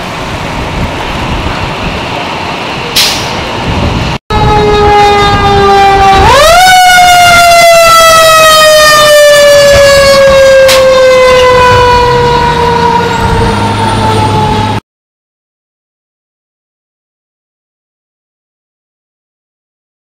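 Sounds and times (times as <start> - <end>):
fire engine mechanical siren: 4.3 - 14.8.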